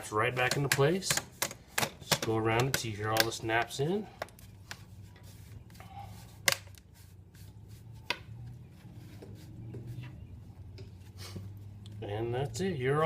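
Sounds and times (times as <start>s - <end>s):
handling rubs: 4.3s - 12.0s.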